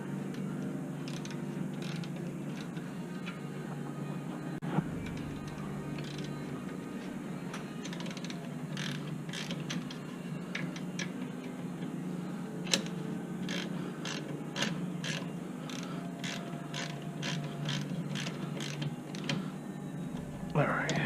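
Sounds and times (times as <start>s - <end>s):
ratchet wrench clicking: 7.9s - 9.9s, 13.5s - 19.3s.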